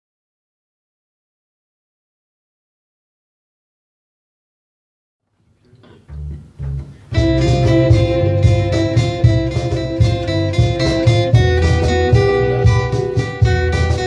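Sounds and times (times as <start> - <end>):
acoustic guitar strumming: 5.9 - 14.0
low bass line: 6.0 - 14.0
held sustained notes: 7.1 - 13.4.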